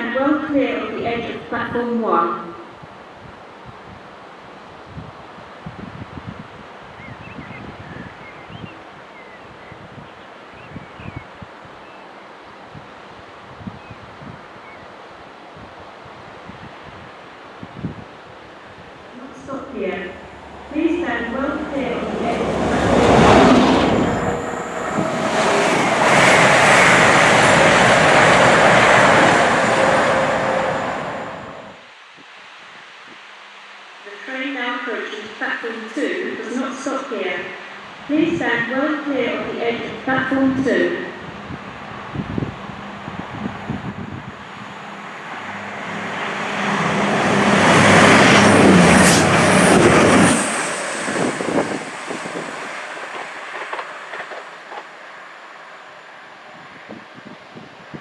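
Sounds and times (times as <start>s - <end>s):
train passing at speed: 12.4s - 31.9s, 36.4s - 58.0s.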